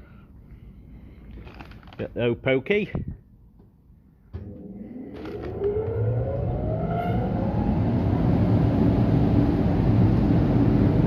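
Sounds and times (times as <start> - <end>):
motor whining and humming: 4.4 - 10.0.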